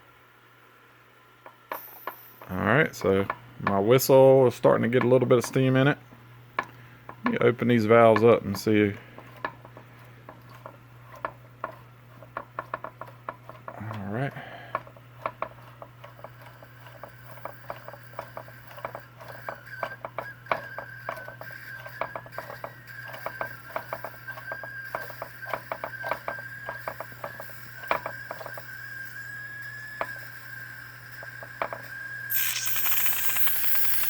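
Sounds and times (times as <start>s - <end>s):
clicks and ticks from hot boilers: 1.4s - 34.0s
faint steam whistle tone: 16.4s - 34.0s
steam hiss: 28.6s - 34.0s.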